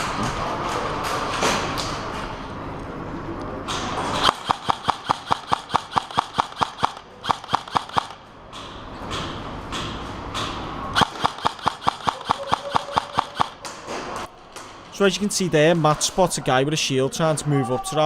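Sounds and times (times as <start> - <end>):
airsoft rifle firing shots: 4.2 - 8.2, 11.0 - 13.8.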